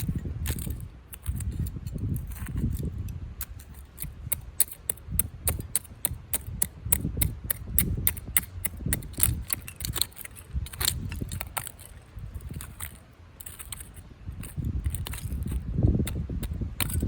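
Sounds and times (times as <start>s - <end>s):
dry wood snapping and crackling: 0.0s - 17.0s.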